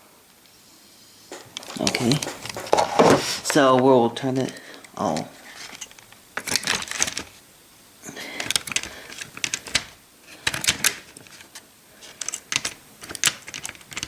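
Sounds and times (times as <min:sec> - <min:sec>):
parts knocking against rails: 0:01.3 - 0:07.3
model train parts clicking: 0:08.4 - 0:14.0.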